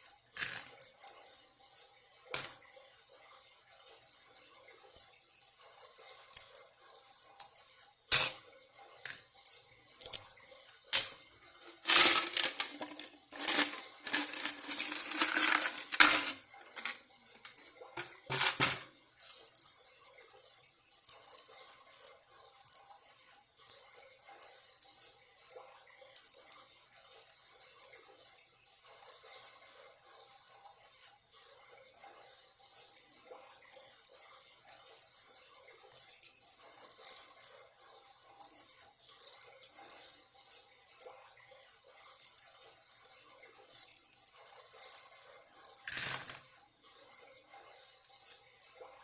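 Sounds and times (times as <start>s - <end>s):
coins clinking: 0.0s - 1.2s, 2.4s - 4.2s, 4.9s - 8.4s, 9.0s - 22.9s, 35.9s - 37.6s, 43.7s - 46.4s
dense coin jingling: 11.7s - 18.8s.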